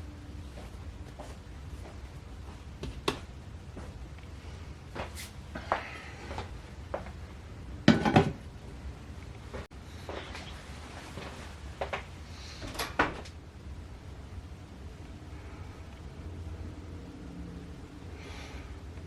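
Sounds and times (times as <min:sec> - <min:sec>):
dishes clattering: 0:07.9 - 0:08.4.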